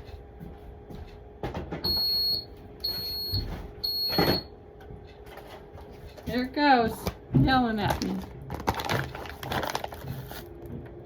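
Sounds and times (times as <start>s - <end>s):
refrigerator door alarm beeping: 1.8s - 4.6s.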